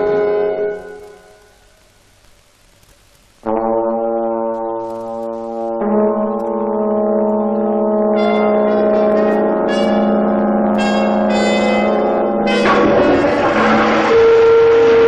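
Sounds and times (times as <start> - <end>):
brass soundtrack music: 3.4 - 15.0
loud rushing noise: 12.6 - 15.0.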